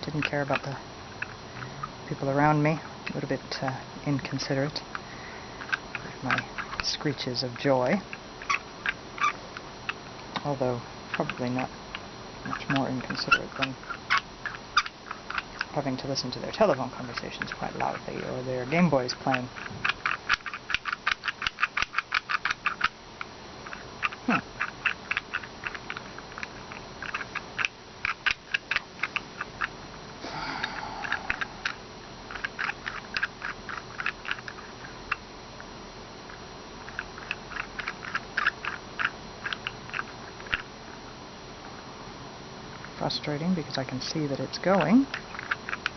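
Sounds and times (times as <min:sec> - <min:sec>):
wooden puzzle box clicking: 0:11.1 - 0:15.7, 0:19.1 - 0:23.0, 0:23.6 - 0:29.7, 0:30.6 - 0:35.2, 0:36.9 - 0:40.6, 0:44.7 - 0:45.9.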